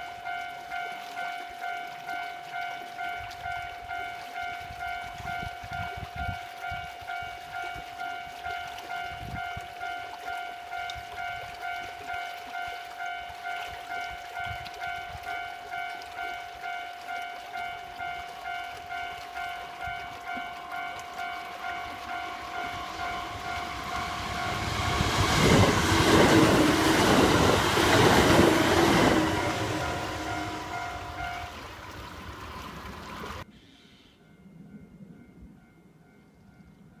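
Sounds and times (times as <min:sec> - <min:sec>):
train running noise: 0:03.2 - 0:33.5.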